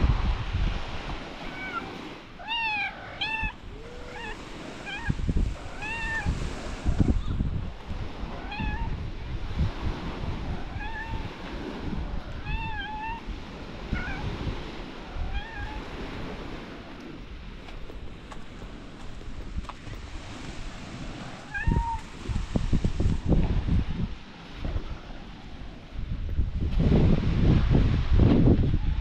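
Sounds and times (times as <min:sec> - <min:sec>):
cat meowing: 0:01.4 - 0:06.4, 0:08.3 - 0:09.0, 0:10.6 - 0:11.4, 0:12.3 - 0:13.3, 0:13.9 - 0:14.4, 0:15.2 - 0:15.9, 0:21.4 - 0:22.1.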